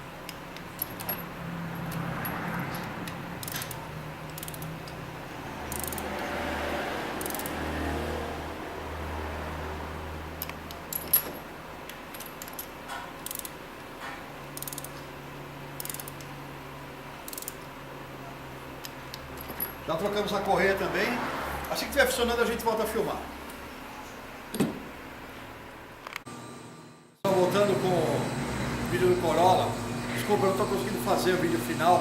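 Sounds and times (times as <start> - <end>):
hand tools clicking on metal: 0.3 - 5.1, 7.2 - 7.6, 11.9 - 13.6, 14.5 - 15.1, 15.8 - 16.3, 17.3 - 17.7.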